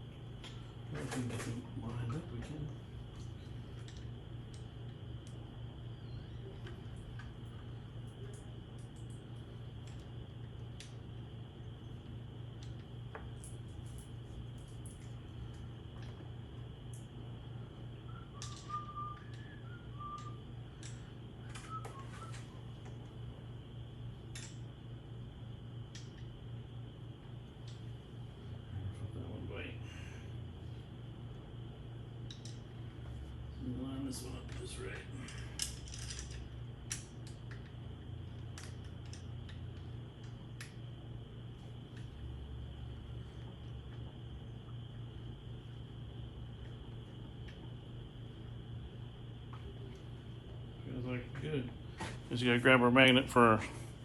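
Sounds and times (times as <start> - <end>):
steady background hum: 0.0 - 54.0
person whistling: 18.0 - 20.5, 21.5 - 22.7.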